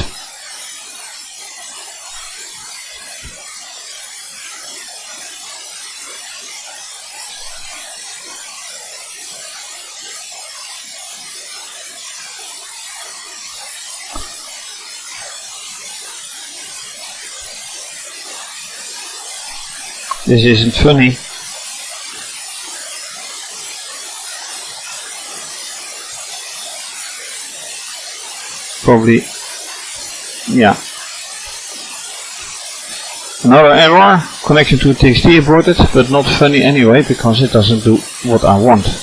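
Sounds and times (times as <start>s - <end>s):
steady background hiss: 19.3s - 21.4s, 27.9s - 39.0s.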